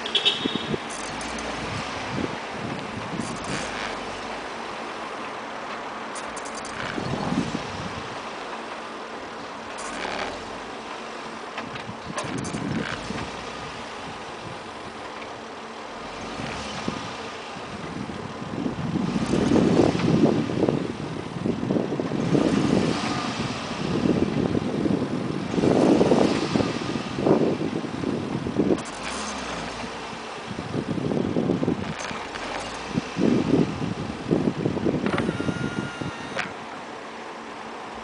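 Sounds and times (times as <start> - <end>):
wind buffeting microphone: 0.0 - 5.0, 6.6 - 8.4, 16.0 - 36.7
road and wind noise: 0.0 - 38.0.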